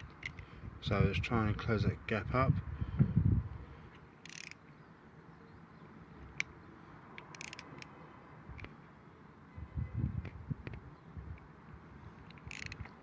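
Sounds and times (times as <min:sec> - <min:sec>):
ratchet spanner clicking: 0:04.2 - 0:04.6, 0:07.2 - 0:07.9, 0:12.2 - 0:13.0.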